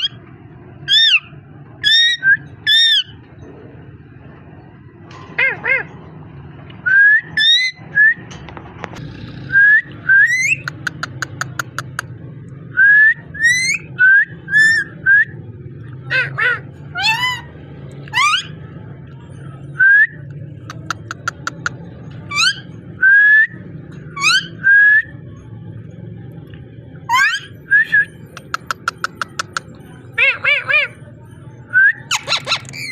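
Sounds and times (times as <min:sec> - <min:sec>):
rough parakeet calls: 0:00.9 - 0:03.2, 0:16.1 - 0:17.5, 0:32.1 - 0:32.9
parakeet whistling: 0:22.3 - 0:23.6, 0:24.2 - 0:25.1, 0:27.1 - 0:29.6
parakeet clicks: 0:28.4 - 0:29.7.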